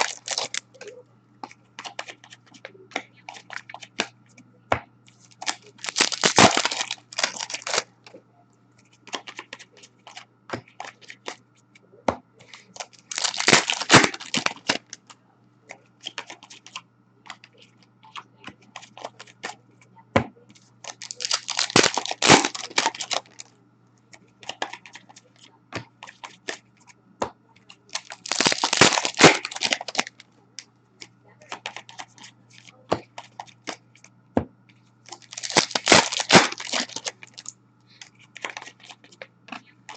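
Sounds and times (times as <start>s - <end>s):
foil wrapper ripping: 0.0s - 0.6s, 5.3s - 7.9s, 12.6s - 15.0s, 20.9s - 23.4s, 27.9s - 30.2s, 35.1s - 37.5s, 38.4s - 39.0s
cards clicking and flicking: 0.0s - 4.1s, 5.2s - 7.9s, 12.4s - 15.1s, 20.8s - 23.5s, 27.9s - 30.2s, 35.1s - 39.7s.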